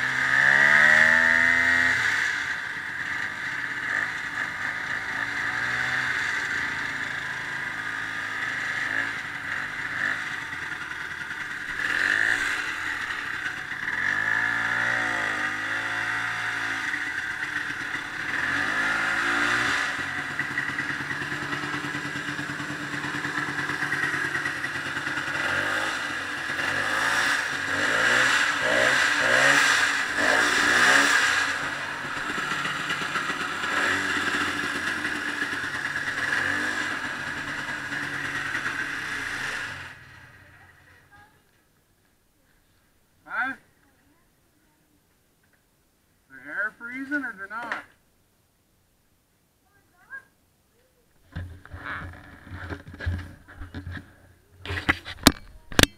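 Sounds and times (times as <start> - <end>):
snowmobile engine revving: 0.0 - 41.2.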